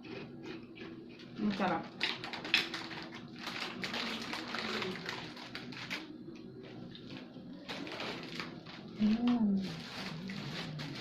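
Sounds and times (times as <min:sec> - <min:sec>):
chewing: 0:00.0 - 0:01.4.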